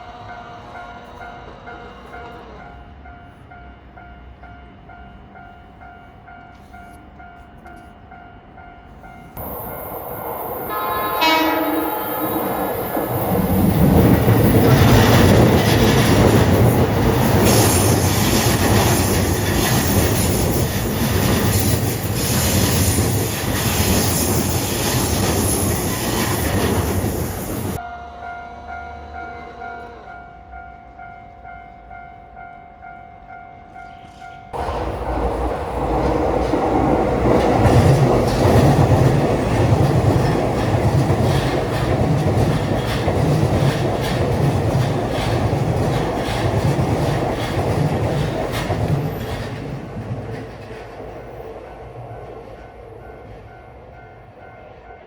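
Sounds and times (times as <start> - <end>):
railroad crossing bell dinging: 0.0 - 22.1, 22.8 - 34.8
train rumbling past: 0.0 - 55.0
train horn blast: 9.4 - 13.4, 27.8 - 30.5.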